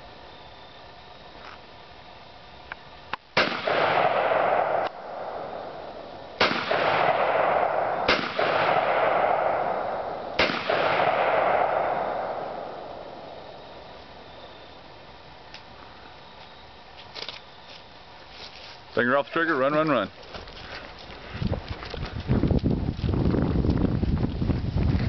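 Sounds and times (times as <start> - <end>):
gunshots with rolling echo: 3.4 - 14.3.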